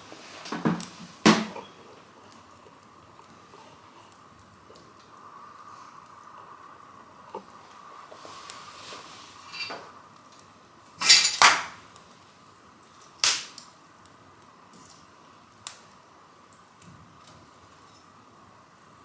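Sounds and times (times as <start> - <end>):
wood fire crackling: 0.0 - 19.0
sharp pops of fire: 11.0 - 12.1, 13.0 - 14.2.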